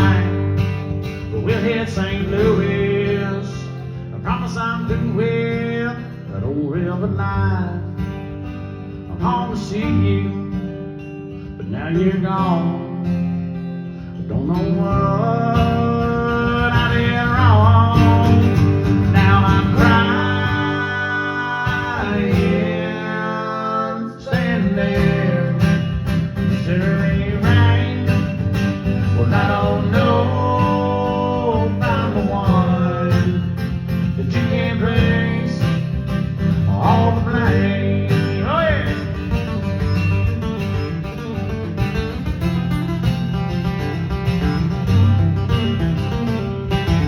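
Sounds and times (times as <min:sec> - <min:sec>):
strummed acoustic guitar: 0:00.0 - 0:47.0
bass line: 0:14.3 - 0:47.0.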